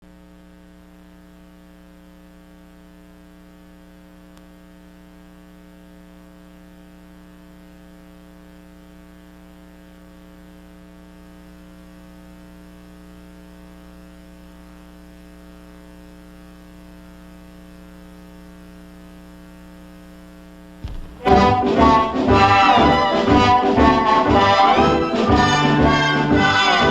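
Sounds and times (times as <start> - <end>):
electrical mains hum: 0.0 - 26.9
brass-led orchestral music: 20.9 - 26.9.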